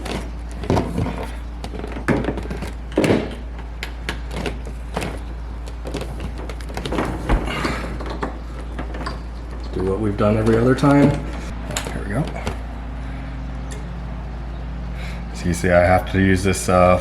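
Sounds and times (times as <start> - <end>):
equipment thunks and clicks: 0.0 - 12.8
steady low hum: 0.0 - 17.0.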